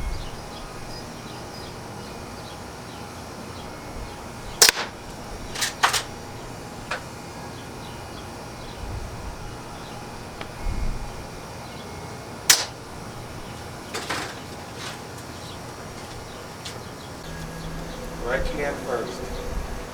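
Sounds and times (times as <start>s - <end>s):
air rifle shot: 4.6s - 5.0s, 12.5s - 12.8s
sharp clicks: 4.6s - 5.0s, 12.5s - 12.8s.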